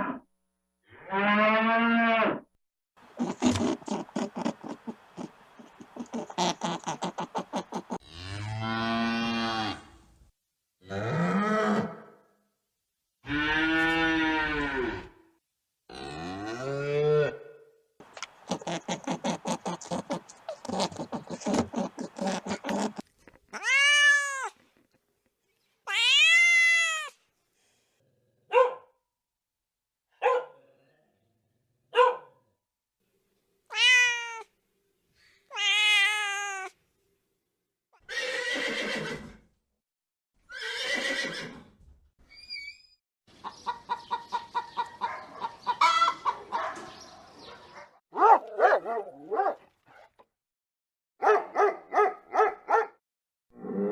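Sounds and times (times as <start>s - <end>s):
cats meowing: 18.5s - 24.6s, 25.9s - 27.2s, 33.7s - 34.5s, 35.5s - 36.8s.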